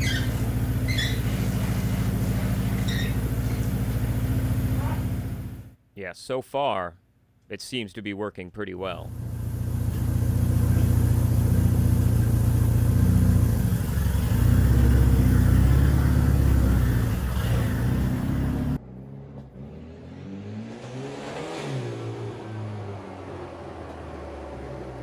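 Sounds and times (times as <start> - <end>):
engine revving: 0.0 - 5.7, 9.0 - 25.0
pickup engine running loudly: 0.0 - 5.7, 9.1 - 18.8.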